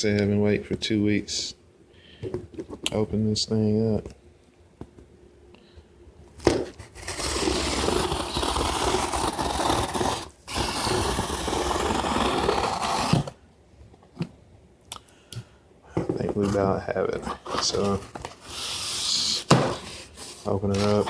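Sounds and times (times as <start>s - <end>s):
packing tape scraping and tearing: 6.7s - 13.4s, 17.4s - 21.0s.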